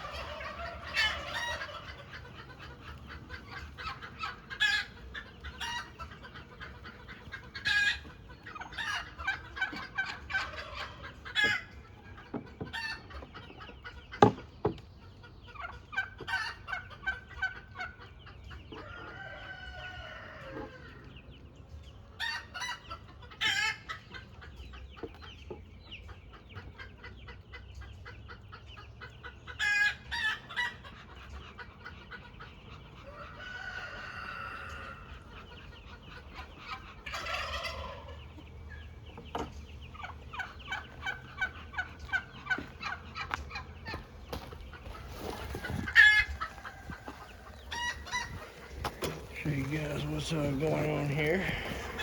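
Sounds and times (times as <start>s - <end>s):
chickens clucking: 0.0s - 52.0s
rooster crowing: 33.2s - 35.1s.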